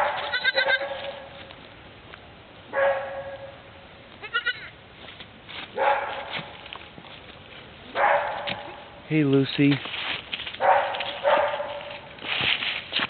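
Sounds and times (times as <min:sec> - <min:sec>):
goats bleating: 0:00.2 - 0:00.9, 0:04.2 - 0:04.7.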